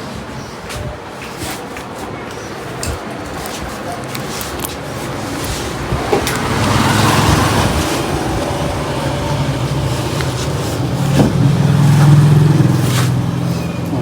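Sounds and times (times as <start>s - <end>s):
vehicle engine passing: 5.0s - 14.0s.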